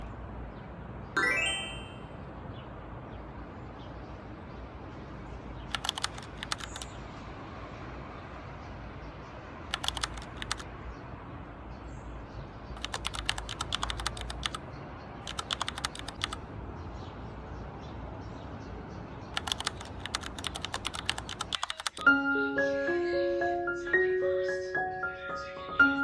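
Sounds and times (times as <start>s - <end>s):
soft melodic music: 1.2s - 2.2s, 22.0s - 26.0s
keyboard typing: 5.7s - 7.0s, 9.7s - 10.7s, 12.8s - 14.6s, 15.2s - 16.4s, 19.4s - 22.1s.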